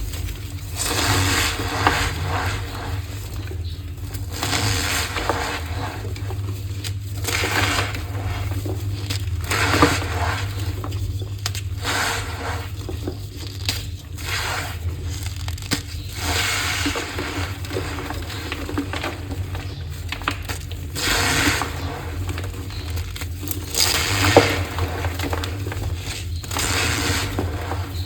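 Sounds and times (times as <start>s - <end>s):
chalk crushed by hand: 6.8s - 19.2s.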